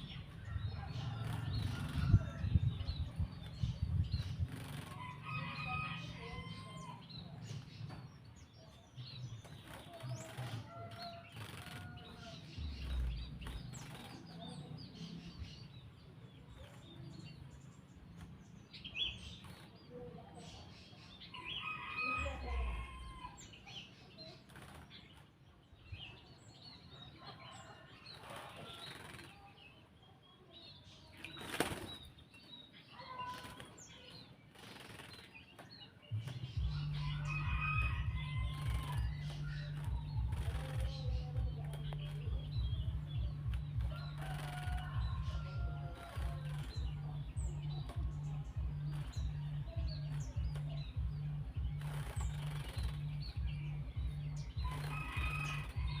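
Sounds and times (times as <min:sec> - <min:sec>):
bird wings flapping: 0:09.5 - 0:14.3, 0:28.2 - 0:29.4, 0:31.2 - 0:32.1, 0:34.5 - 0:35.3, 0:38.5 - 0:41.9, 0:51.8 - 0:53.0.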